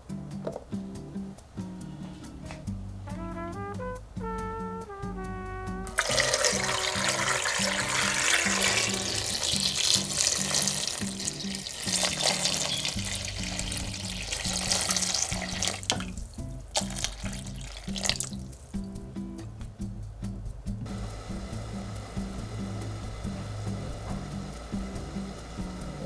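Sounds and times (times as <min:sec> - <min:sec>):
tap water running into sink: 0:05.9 - 0:18.9
water dripping: 0:05.9 - 0:19.1.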